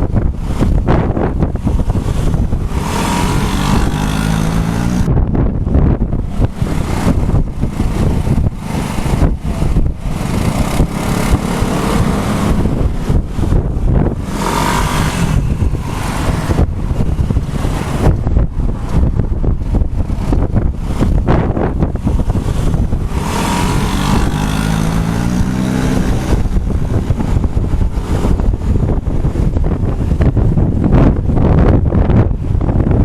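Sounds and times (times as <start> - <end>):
traffic: 0.0 - 33.0
wind buffeting microphone: 0.0 - 33.0
vehicle engine rising in pitch: 2.4 - 5.2, 5.8 - 18.5, 22.0 - 29.4.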